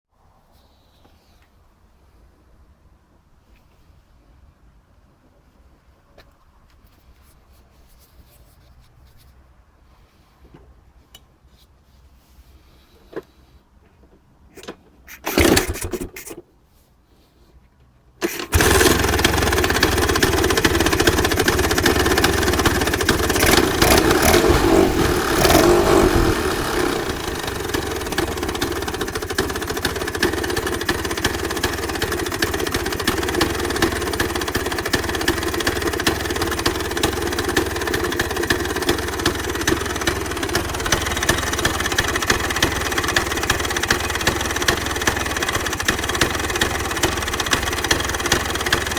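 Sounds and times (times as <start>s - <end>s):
scooter engine starting and idling: 14.5s - 16.5s, 18.2s - 48.9s.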